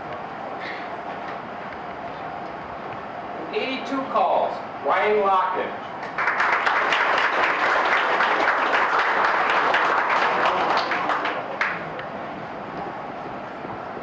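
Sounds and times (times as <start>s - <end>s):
audience applauding: 6.0s - 12.2s.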